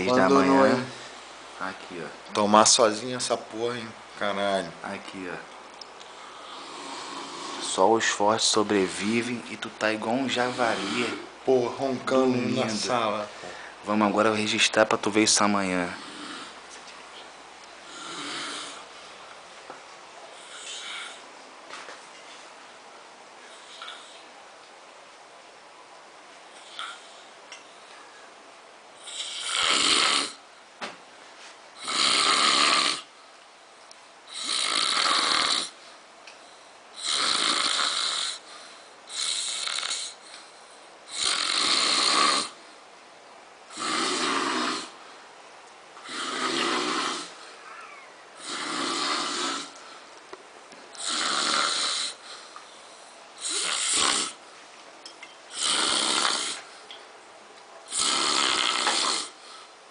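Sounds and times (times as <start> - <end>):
man snoring: 6.2 - 8.2, 10.2 - 11.3, 15.8 - 16.6, 17.9 - 18.9, 20.4 - 21.2, 29.0 - 30.4, 31.8 - 33.1, 34.3 - 35.8, 37.0 - 38.5, 39.1 - 40.2, 41.1 - 42.6, 43.7 - 45.0, 46.0 - 47.5, 48.4 - 49.8, 51.0 - 52.3, 53.4 - 54.4, 55.5 - 56.6, 57.9 - 59.4.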